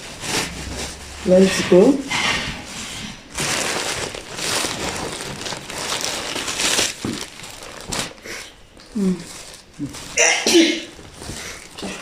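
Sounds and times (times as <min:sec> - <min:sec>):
packaging crinkling: 0:02.7 - 0:12.0.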